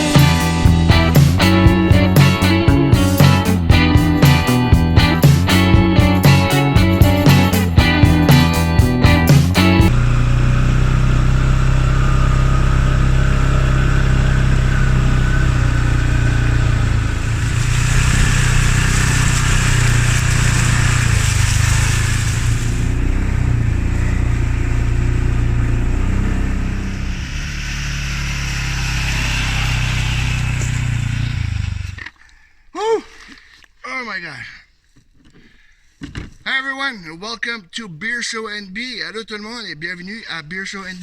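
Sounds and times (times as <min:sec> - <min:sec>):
all-terrain vehicle engine running: 0:00.0 - 0:32.0.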